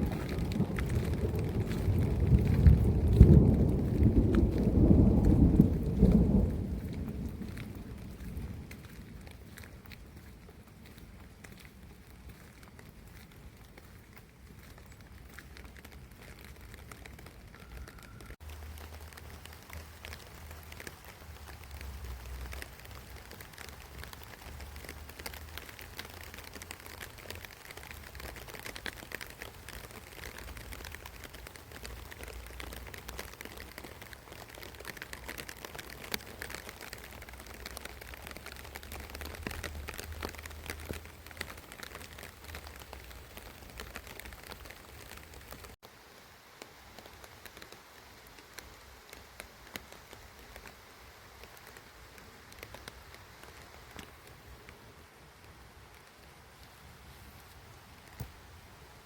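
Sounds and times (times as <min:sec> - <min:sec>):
low rumble: 0:00.0 - 0:09.3
dense crackling patter: 0:00.0 - 0:45.9.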